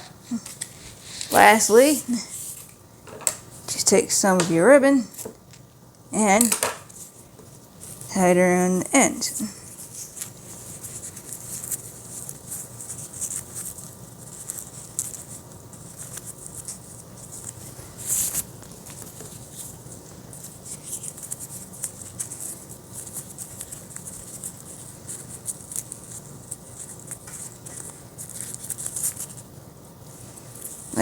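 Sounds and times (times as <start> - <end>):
ribbon and cloth rustling: 0.3 - 2.8, 6.2 - 29.4.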